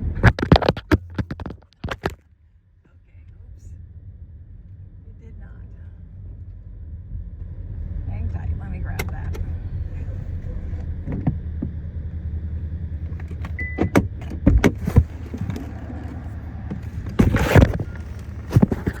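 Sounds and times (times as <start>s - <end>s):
sharp knocks and rattles: 0.0s - 2.2s
car engine and road hum: 0.0s - 19.0s
loud clatter: 13.0s - 19.0s.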